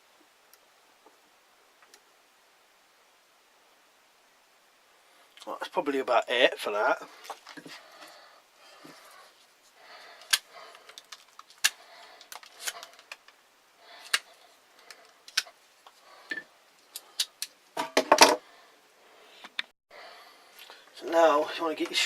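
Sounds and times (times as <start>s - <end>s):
wooden pieces clicking and knocking: 10.2s - 13.4s.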